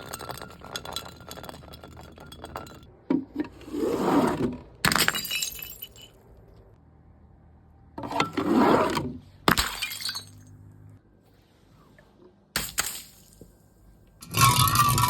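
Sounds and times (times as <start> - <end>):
glass bottles shattering: 0.0 - 2.9, 4.8 - 6.2, 9.5 - 10.6, 12.6 - 13.4, 14.2 - 15.0.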